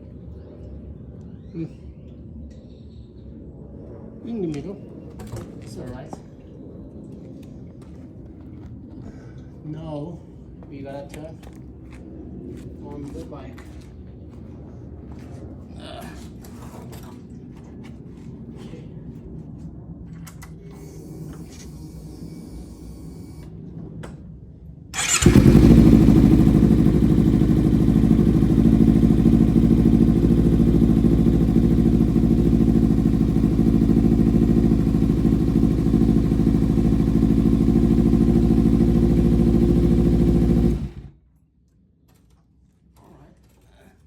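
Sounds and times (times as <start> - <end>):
motorcycle engine starting and idling: 25.0 - 41.2.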